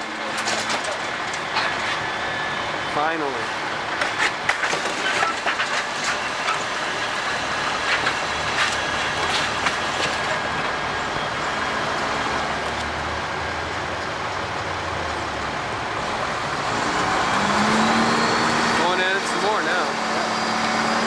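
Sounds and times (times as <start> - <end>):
building material cracking and crunching: 0.0 - 2.0, 4.0 - 7.0, 7.7 - 10.7
demolition machine engine running: 0.0 - 21.0.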